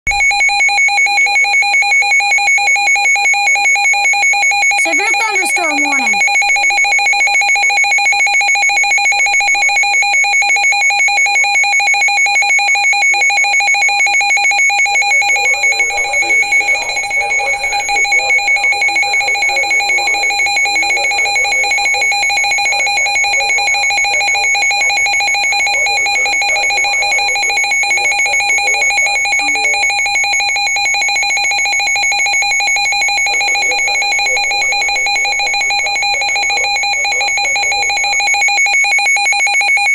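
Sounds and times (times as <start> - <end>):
faint voices: 4.8 - 6.2.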